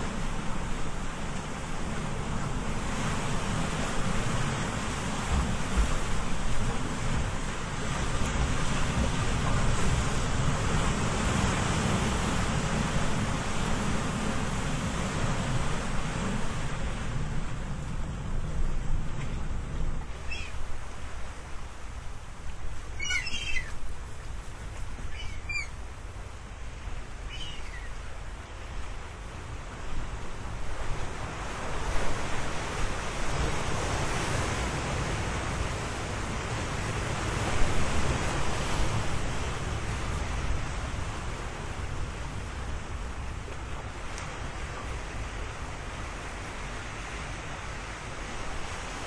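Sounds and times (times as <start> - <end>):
ocean surf washing ashore: 0.0 - 49.0
falling bird chirps: 20.2 - 20.6, 23.0 - 23.8, 25.0 - 25.8, 27.3 - 28.0.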